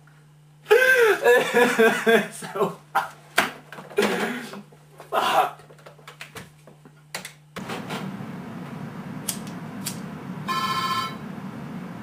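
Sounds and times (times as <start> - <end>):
click: 9.3 - 10.0
electronic telephone ring: 10.5 - 11.2.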